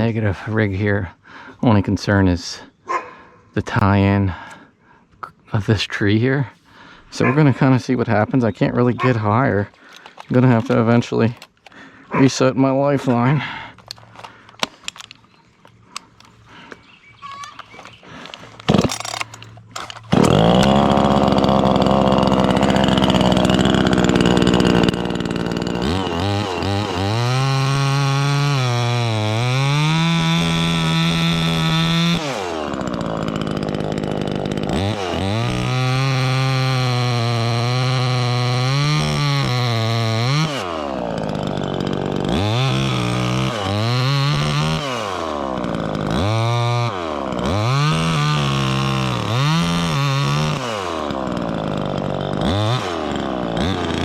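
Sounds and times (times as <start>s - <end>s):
chainsaw revving and cutting wood: 18.1s - 54.0s.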